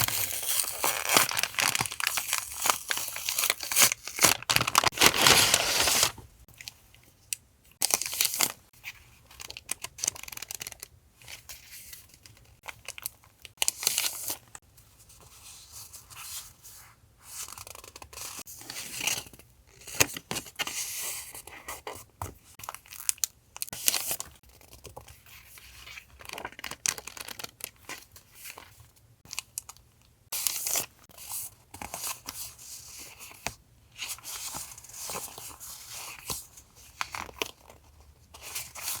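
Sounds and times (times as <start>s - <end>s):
paper rustling and tearing: 0.0s - 6.2s.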